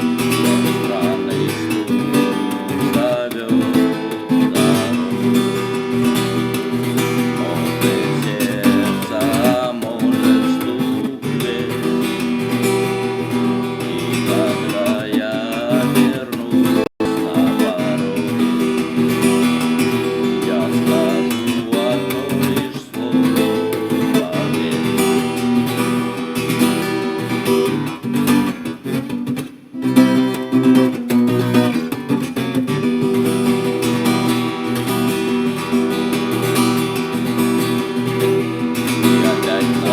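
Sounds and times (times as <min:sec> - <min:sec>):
acoustic guitar music: 0:00.0 - 0:39.9.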